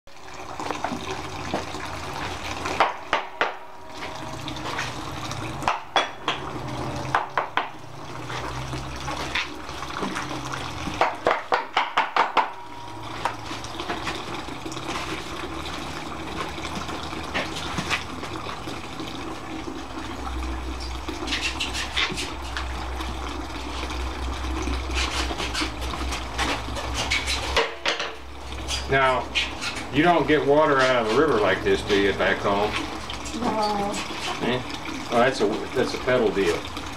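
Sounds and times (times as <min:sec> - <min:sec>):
juice running from press: 0:00.1 - 0:36.9.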